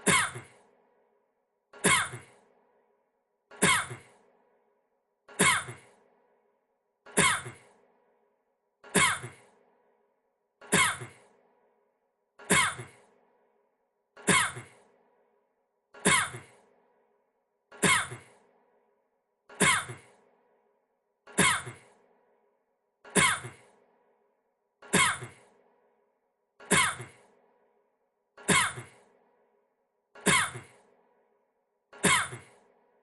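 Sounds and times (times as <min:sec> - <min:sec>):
man coughing: 0:05.4 - 0:05.8, 0:10.7 - 0:11.2, 0:14.2 - 0:14.8, 0:19.6 - 0:20.1, 0:23.1 - 0:23.6, 0:32.0 - 0:32.5.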